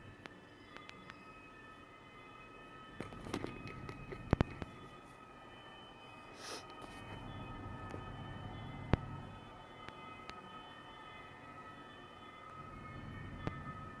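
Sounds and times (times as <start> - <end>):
droning hum of held tones: 0.0 - 14.0
low rumble: 7.0 - 9.6.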